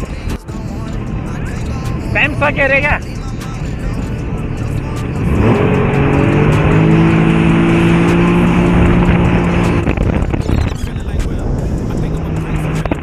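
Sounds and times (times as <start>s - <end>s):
jet ski engine revving: 5.2s - 10.1s.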